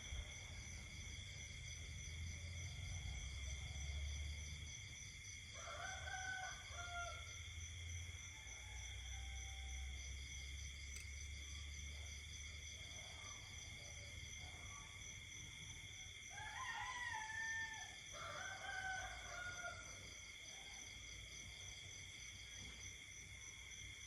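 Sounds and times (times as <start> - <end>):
night insects trilling: 0.0 - 24.0
rooster crowing: 5.5 - 7.4, 8.3 - 10.0, 16.3 - 20.0.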